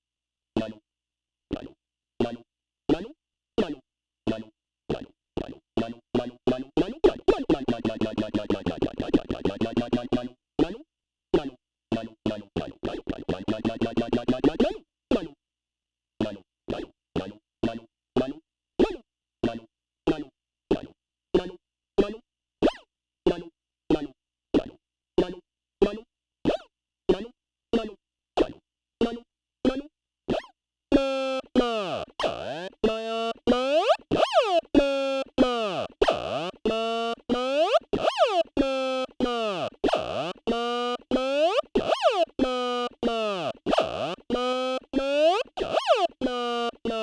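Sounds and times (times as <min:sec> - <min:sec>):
talking synth tones: 0:31.0 - 0:47.0.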